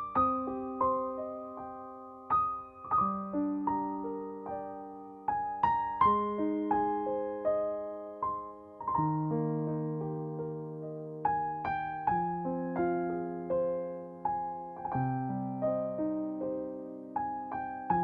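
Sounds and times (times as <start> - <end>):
slow solo piano piece: 0.0 - 18.0.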